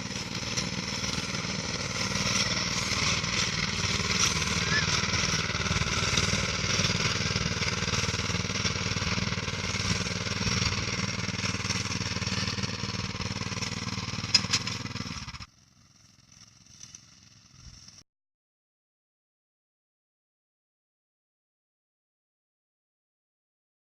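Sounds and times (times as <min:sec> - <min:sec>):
small engine chugging: 0:00.0 - 0:18.0.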